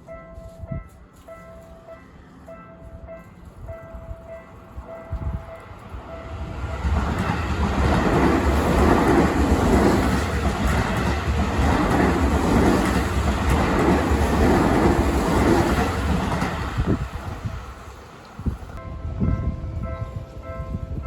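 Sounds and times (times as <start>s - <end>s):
train rumbling past: 0.0s - 21.0s
train wheel clatter: 6.6s - 17.7s.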